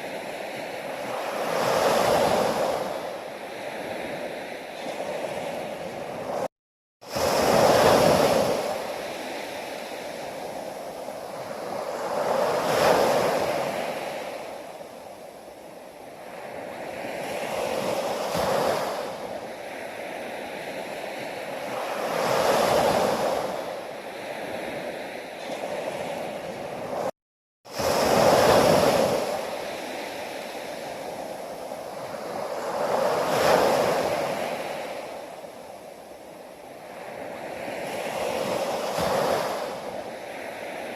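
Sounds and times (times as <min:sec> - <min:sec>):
ocean waves breaking on shore: 0:00.0 - 0:40.9.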